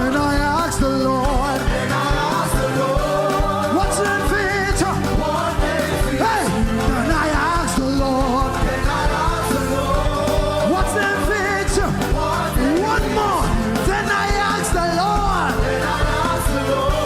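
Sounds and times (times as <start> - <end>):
steady drum beat: 0.0 - 17.0
upbeat gospel band music: 0.0 - 17.0.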